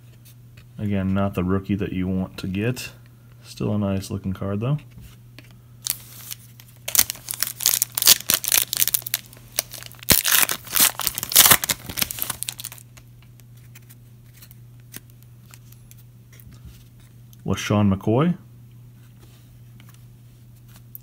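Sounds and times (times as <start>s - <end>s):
wrapper tearing and crinkling: 5.8s - 12.9s.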